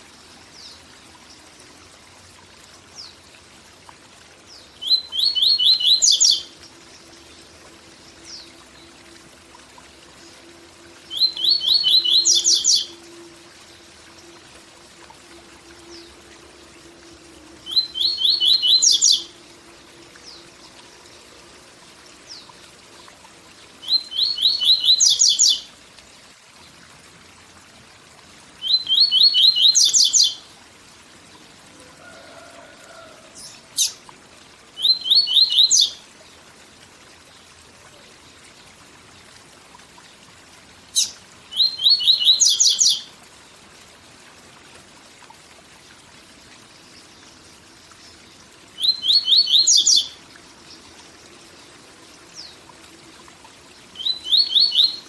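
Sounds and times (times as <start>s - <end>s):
bird song of rapid notes: 4.4s - 7.5s, 11.0s - 13.0s, 17.6s - 19.4s, 22.2s - 25.7s, 28.6s - 30.5s, 34.8s - 36.0s, 40.9s - 43.1s, 46.8s - 51.7s, 53.7s - 55.0s
waterfall rush: 31.7s - 33.7s.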